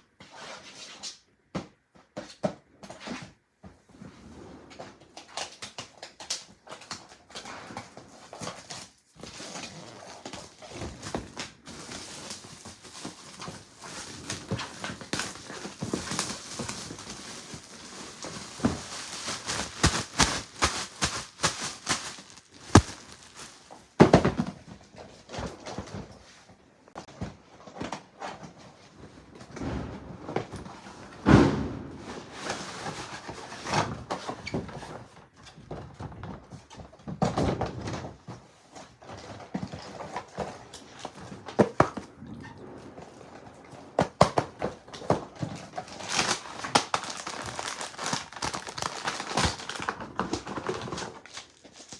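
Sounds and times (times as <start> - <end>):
wrapping paper crinkling: 9.4 - 24.0, 45.6 - 51.9.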